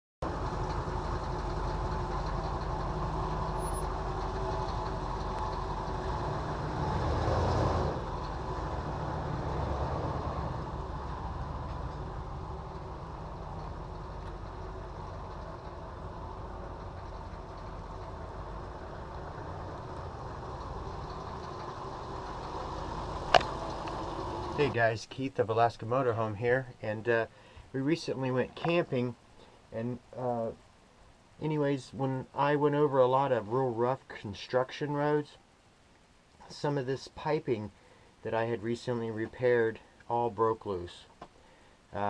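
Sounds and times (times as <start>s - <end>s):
engine humming: 0.2s - 25.0s.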